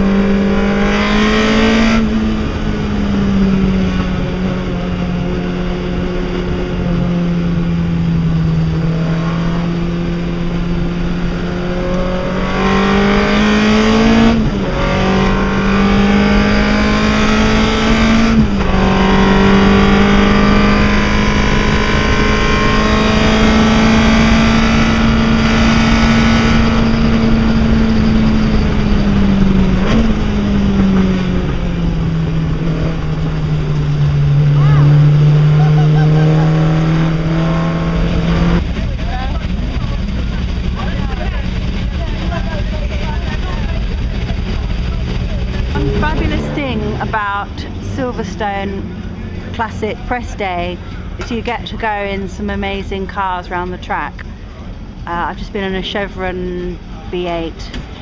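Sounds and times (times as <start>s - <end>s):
race car engine accelerating: 0.0s - 58.0s.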